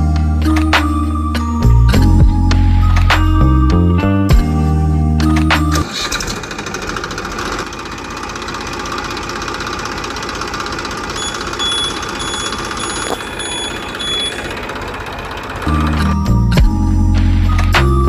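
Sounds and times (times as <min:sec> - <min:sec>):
small motor rattling: 0:06.0 - 0:16.1
short high beeps: 0:11.2 - 0:14.6.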